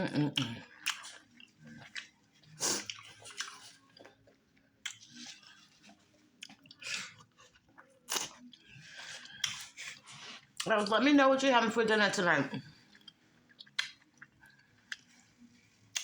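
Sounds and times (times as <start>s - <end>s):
person chewing wet mouth noises: 0.1s - 4.1s, 12.9s - 15.2s.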